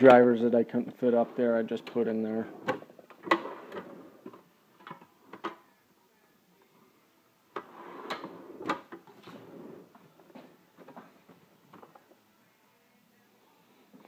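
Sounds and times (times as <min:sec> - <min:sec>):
metal drawer sliding: 0:07.6 - 0:09.9.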